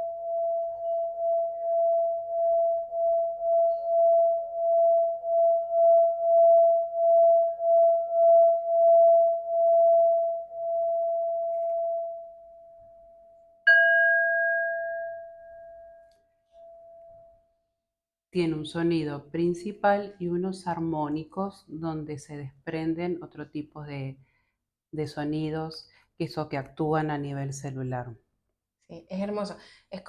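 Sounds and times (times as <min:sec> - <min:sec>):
singing bowl rubbed ringing: 0:00.0 - 0:17.4
singing bowl struck: 0:13.7 - 0:17.2.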